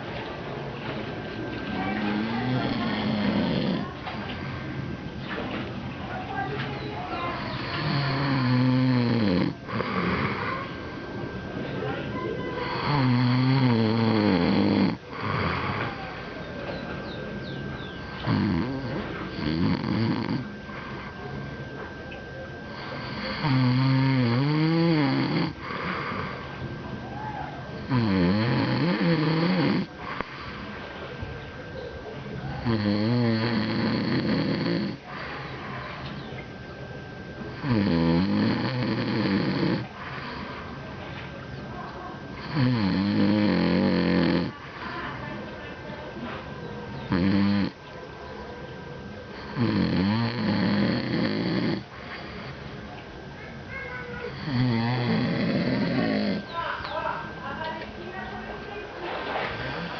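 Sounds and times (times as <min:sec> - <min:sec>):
quiet breathing: 0:00.8 - 0:08.6, 0:09.5 - 0:23.6, 0:24.9 - 0:28.0, 0:29.2 - 0:32.6, 0:33.7 - 0:37.6, 0:38.6 - 0:42.6, 0:44.4 - 0:47.0, 0:50.5 - 0:56.5, 0:58.0 - 0:59.9
loud snoring: 0:01.8 - 0:04.5, 0:07.3 - 0:11.0, 0:12.6 - 0:16.4, 0:17.8 - 0:21.1, 0:22.7 - 0:26.4, 0:27.8 - 0:30.6, 0:32.6 - 0:36.0, 0:37.5 - 0:40.6, 0:42.3 - 0:44.6, 0:47.1 - 0:47.8, 0:49.3 - 0:52.6, 0:54.2 - 0:56.5.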